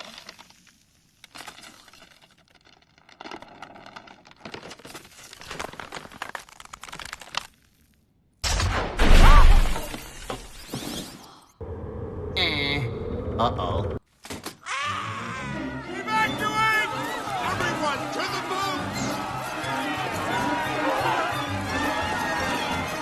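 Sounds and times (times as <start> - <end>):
cracking and breaking: 0.0 - 10.5.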